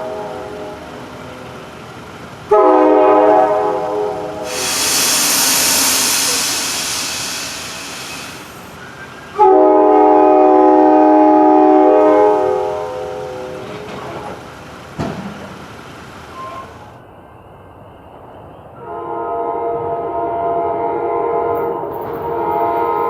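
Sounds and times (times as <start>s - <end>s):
train air horn chord: 2.5s - 8.8s, 9.4s - 13.6s, 18.8s - 23.0s
rushing noise: 4.5s - 8.8s.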